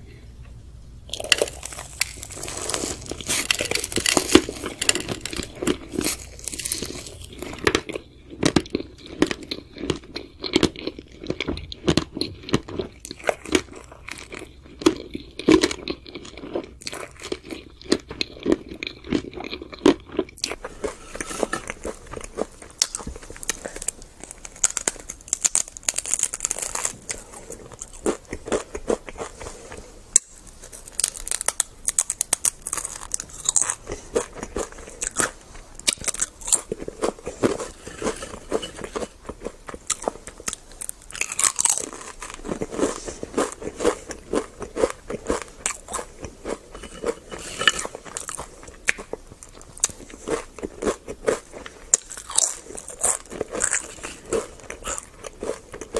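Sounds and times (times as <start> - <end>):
crunchy bites and chewing: 1.1 - 55.9.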